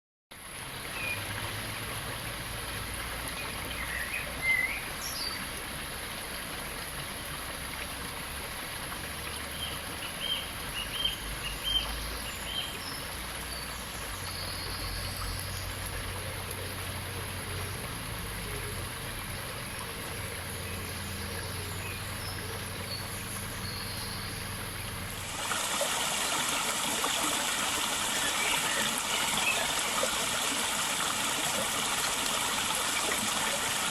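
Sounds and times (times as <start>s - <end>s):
small river flowing: 0.3s - 33.9s
birds chirping: 20.7s - 33.9s.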